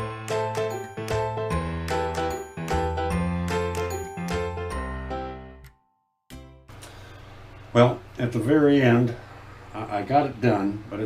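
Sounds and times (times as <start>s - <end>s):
bell-like melody: 0.0s - 6.2s.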